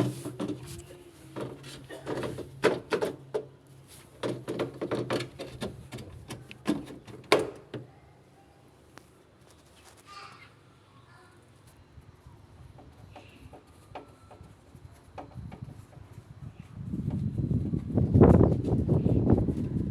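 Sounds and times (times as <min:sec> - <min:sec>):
hard objects knocking and clattering: 0:01.4 - 0:03.5, 0:04.2 - 0:07.8.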